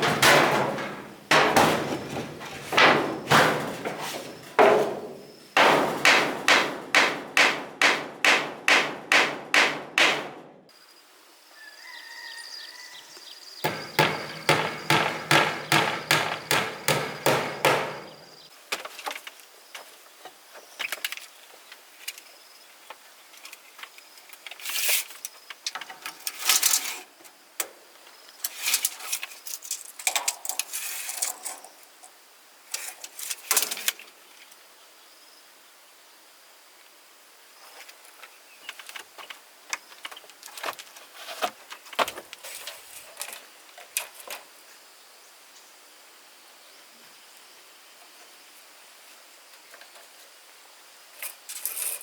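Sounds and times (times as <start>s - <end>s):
wood being handled: 0.0s - 6.0s
insects droning: 0.3s - 7.2s, 10.7s - 40.4s
hammer blows on wood: 13.6s - 18.3s.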